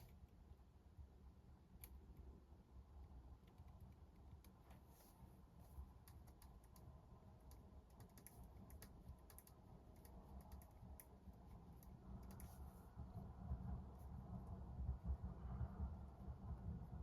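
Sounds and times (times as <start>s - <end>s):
low background rumble: 0.0s - 17.0s
faint keyboard typing: 3.0s - 12.8s.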